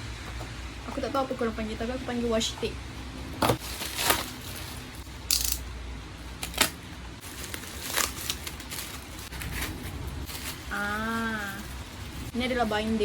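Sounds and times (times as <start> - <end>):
plastic wrapping crinkling: 3.5 - 5.2, 6.4 - 13.0.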